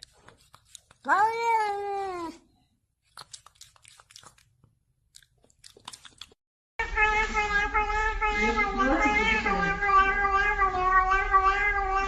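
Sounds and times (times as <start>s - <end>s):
cat chewing: 3.0s - 6.4s
cat meowing: 6.8s - 12.0s.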